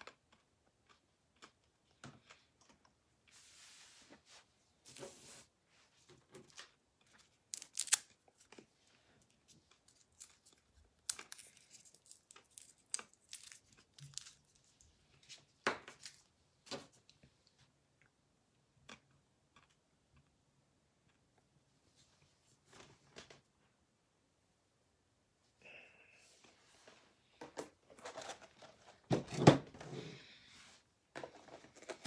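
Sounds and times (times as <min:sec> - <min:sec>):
rustling and crinkling: 0:26.4 - 0:30.0, 0:30.6 - 0:32.0.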